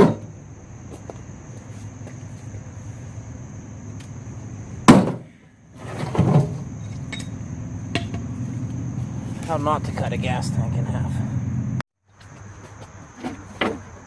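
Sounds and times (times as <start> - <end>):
axe striking steel tank: 0.0 - 0.3, 4.8 - 5.3.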